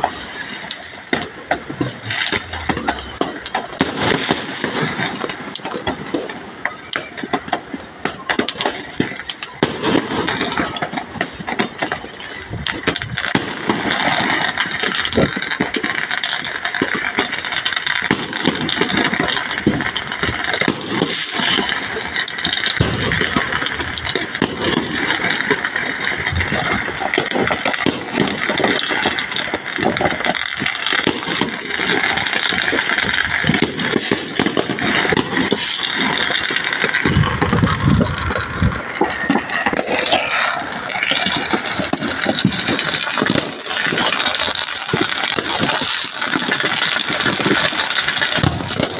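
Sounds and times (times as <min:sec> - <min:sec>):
fireworks crackling and popping: 0:00.0 - 0:48.9
falling firework whistle: 0:17.9 - 0:48.9.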